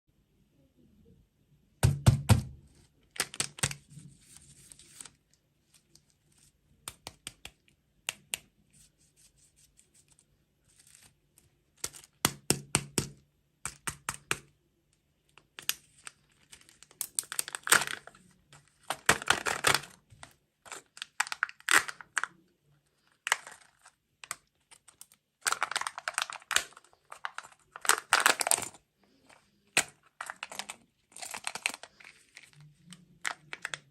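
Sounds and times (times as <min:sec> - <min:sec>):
food packaging crackling and tearing: 0:03.1 - 0:06.5, 0:15.4 - 0:22.4, 0:23.0 - 0:28.8, 0:29.6 - 0:33.9.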